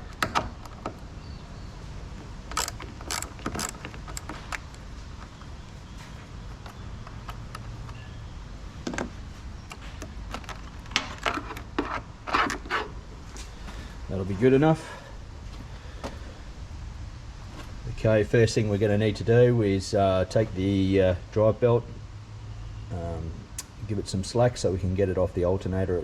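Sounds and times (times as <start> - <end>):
hand tools clicking and knocking: 2.5 - 5.5.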